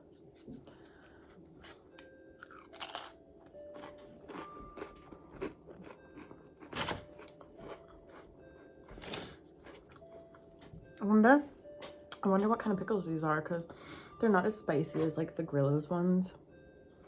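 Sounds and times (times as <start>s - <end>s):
chewing crispy food: 1.4s - 8.3s, 8.9s - 10.7s.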